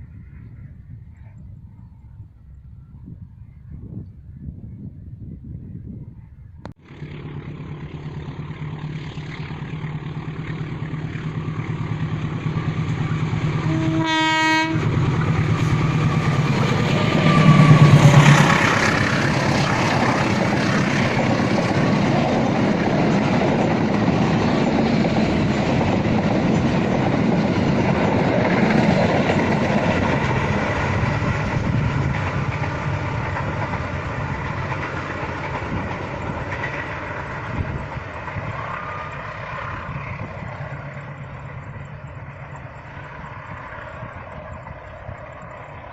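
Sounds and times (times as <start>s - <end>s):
train passing on rails: 0.0s - 6.2s, 6.8s - 45.9s
train horn blast: 13.6s - 15.0s.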